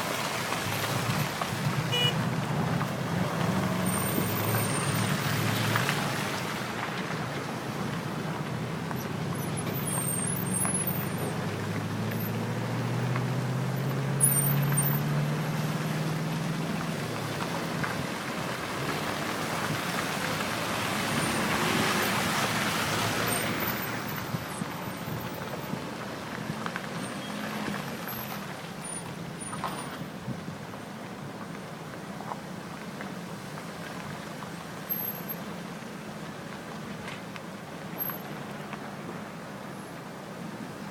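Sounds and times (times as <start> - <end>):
vehicle engine hum: 0.0 - 40.9
vehicle passing by: 2.2 - 6.8, 10.4 - 24.4.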